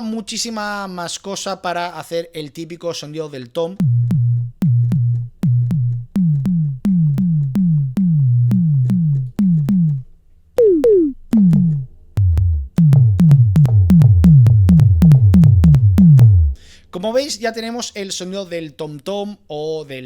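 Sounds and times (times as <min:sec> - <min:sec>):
deep thump: 0:03.8 - 0:10.0, 0:10.7 - 0:16.6
synthesized tom drum hits: 0:03.8 - 0:16.6.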